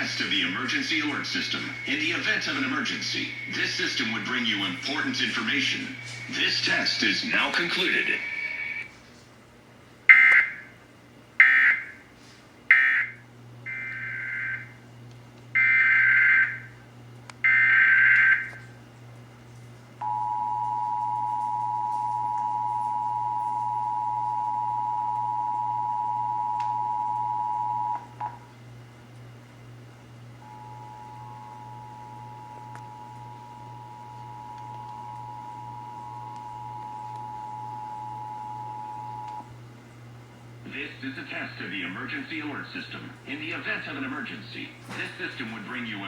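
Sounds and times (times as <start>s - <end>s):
warbling digital data tones: 0.0s - 8.9s
low steady hum: 0.0s - 46.0s.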